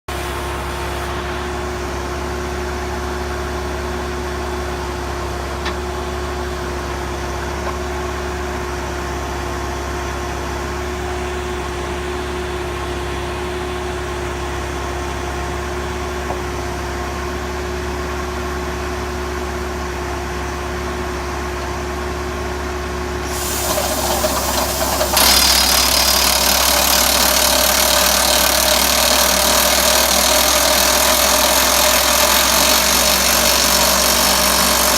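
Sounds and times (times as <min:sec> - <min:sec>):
rock drill hissing and rattling: 0:23.2 - 0:34.9.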